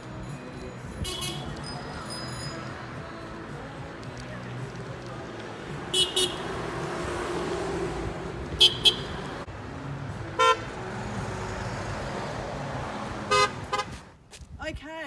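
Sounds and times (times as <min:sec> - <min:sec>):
cars driving by: 0:00.0 - 0:14.2
car horns tooting: 0:01.0 - 0:01.6, 0:05.9 - 0:06.6, 0:08.5 - 0:09.3, 0:10.4 - 0:10.7, 0:13.3 - 0:14.0.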